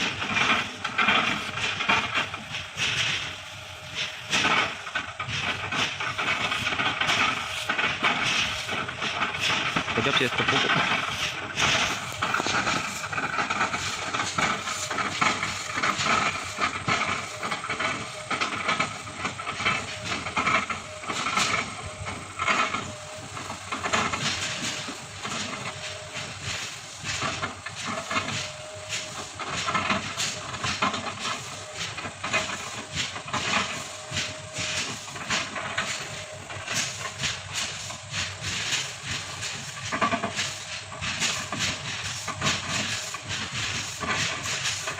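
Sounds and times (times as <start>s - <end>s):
excavator engine and hydraulics: 0.0s - 44.9s.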